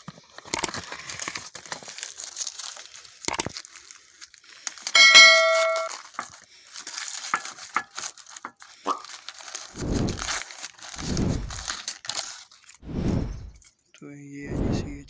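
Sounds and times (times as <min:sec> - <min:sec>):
packaging crinkling and tearing: 0:00.0 - 0:05.0, 0:05.8 - 0:12.8
clicks: 0:00.5 - 0:00.8, 0:03.3 - 0:03.5
metal ringing ding: 0:05.0 - 0:06.0.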